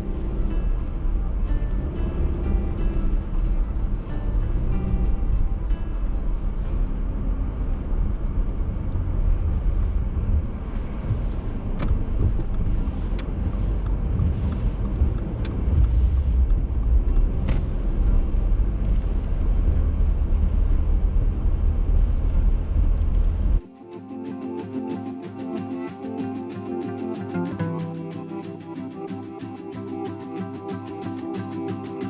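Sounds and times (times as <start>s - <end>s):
steady low rumble: 0.0s - 23.6s.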